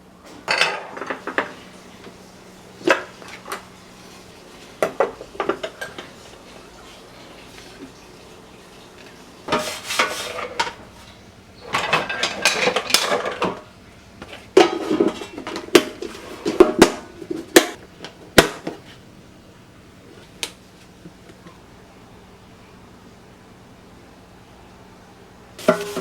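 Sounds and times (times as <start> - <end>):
kitchen dishes clattering: 0.4 - 1.6, 4.8 - 6.2, 9.5 - 13.7, 14.4 - 17.8, 25.6 - 26.0.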